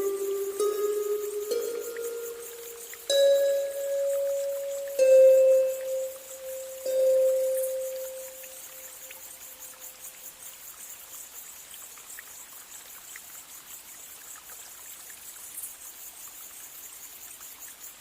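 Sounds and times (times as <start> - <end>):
ringing tone: 0.0 - 8.8
high-pitched hiss: 0.0 - 11.7
faint ticks: 0.0 - 15.9.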